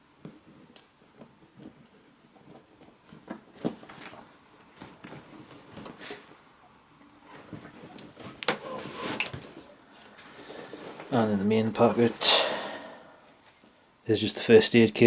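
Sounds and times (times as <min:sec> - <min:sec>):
gear handling clicks and rustles: 0:00.2 - 0:06.0.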